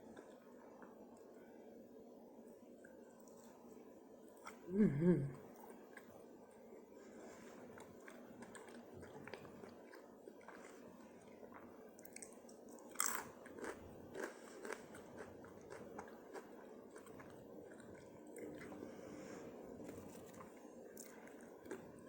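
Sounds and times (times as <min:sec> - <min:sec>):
person eating crunchy food: 0:07.6 - 0:18.9, 0:19.8 - 0:22.0.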